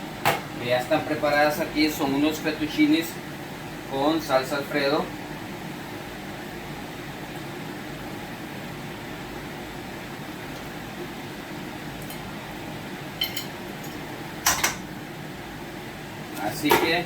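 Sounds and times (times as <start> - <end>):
ventilation hum: 0.0 - 17.0.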